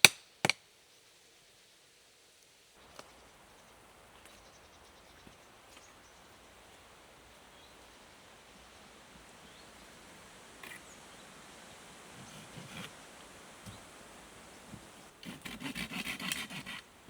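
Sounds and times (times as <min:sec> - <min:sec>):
faint even hiss: 0:00.0 - 0:17.0
faint bird chirps: 0:02.8 - 0:12.9.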